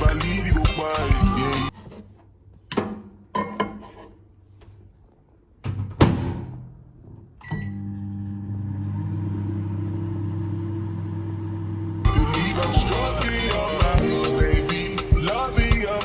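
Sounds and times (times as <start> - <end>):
electrical appliance hum: 7.4 - 16.0.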